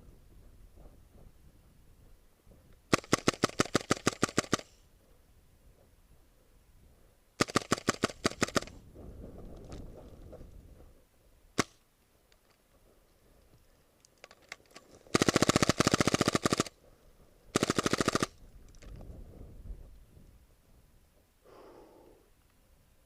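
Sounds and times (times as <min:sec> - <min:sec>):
airsoft gun firing: 0:02.9 - 0:04.8, 0:07.4 - 0:08.8, 0:11.6 - 0:11.8, 0:15.1 - 0:16.7, 0:17.5 - 0:18.4.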